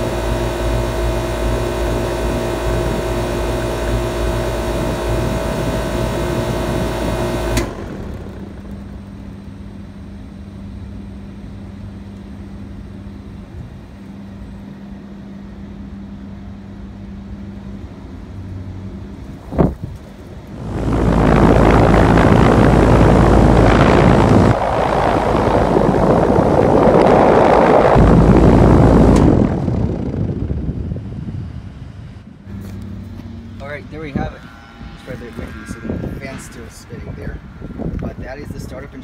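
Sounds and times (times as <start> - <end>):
air conditioner compressor humming: 0.0 - 39.0
condenser fan humming: 0.0 - 39.0.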